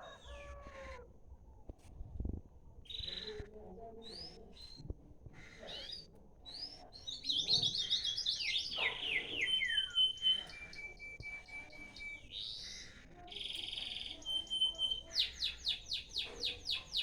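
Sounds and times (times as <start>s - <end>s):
songbird singing: 2.8s - 4.9s, 5.6s - 17.0s.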